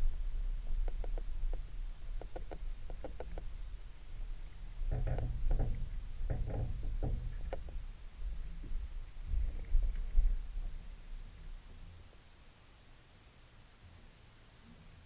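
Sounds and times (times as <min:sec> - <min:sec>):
underwater rumble of moving water: 0:00.0 - 0:12.4
short underwater clicks and knocks: 0:00.8 - 0:03.6, 0:04.8 - 0:07.9.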